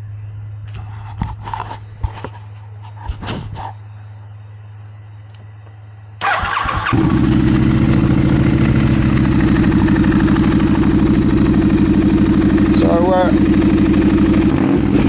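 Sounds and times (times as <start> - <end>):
faint steady hum: 0.0 - 7.2
motorcycle starter cranking: 6.2 - 11.8
motorcycle engine idling: 6.2 - 15.0.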